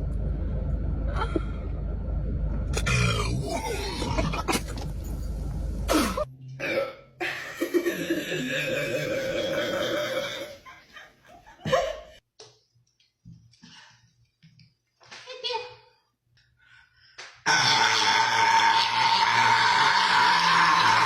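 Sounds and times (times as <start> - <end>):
loud burping: 2.7 - 4.9, 5.9 - 7.2, 7.8 - 10.6, 17.5 - 21.0.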